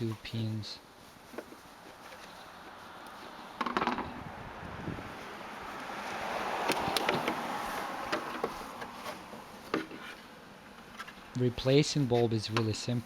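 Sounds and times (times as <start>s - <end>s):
plastic parts rustling and scraping: 1.1s - 4.1s, 6.7s - 11.2s.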